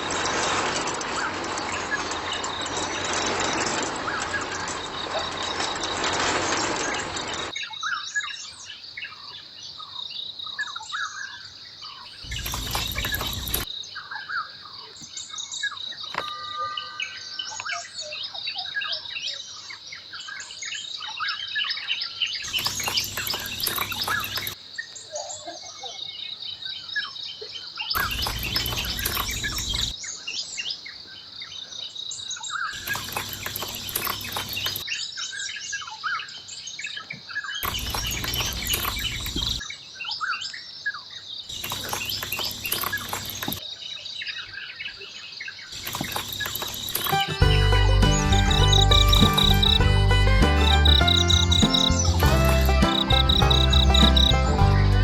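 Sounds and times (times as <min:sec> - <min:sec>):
small birds chirping: 0:00.0 - 0:55.0
broad noise bursts: 0:12.2 - 0:13.7, 0:28.0 - 0:29.9, 0:37.6 - 0:39.6
high insect drone: 0:12.2 - 0:13.7, 0:48.1 - 0:49.9, 0:50.6 - 0:54.5.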